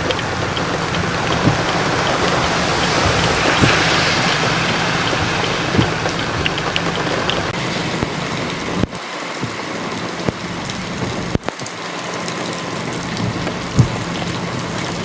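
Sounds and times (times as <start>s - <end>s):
steady rain falling: 0.0s - 15.0s
short knocks: 13.2s - 14.4s.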